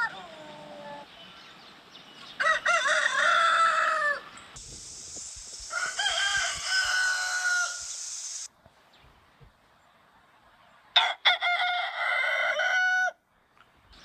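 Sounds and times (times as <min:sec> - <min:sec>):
rooster crowing: 0:00.0 - 0:01.1, 0:02.4 - 0:04.3, 0:05.6 - 0:08.1, 0:11.0 - 0:13.2
steady high hiss: 0:04.2 - 0:08.6.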